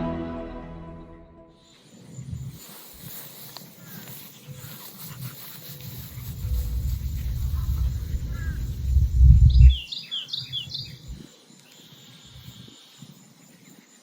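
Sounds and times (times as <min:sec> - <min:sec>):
songbird chirping: 0:00.0 - 0:14.0
low rumbling noise: 0:06.0 - 0:09.8.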